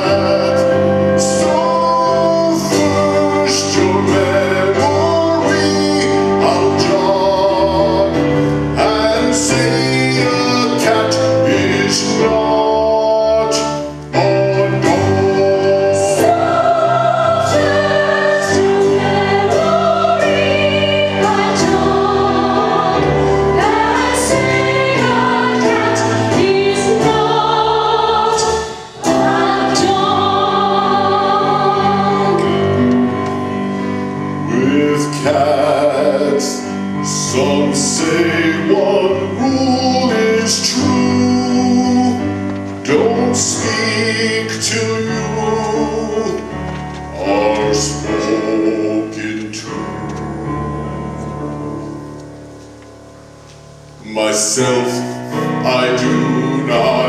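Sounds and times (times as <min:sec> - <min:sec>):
voices singing with vibrato: 0:00.0 - 0:42.0, 0:54.0 - 0:57.0
instrumental accompaniment: 0:00.0 - 0:57.0.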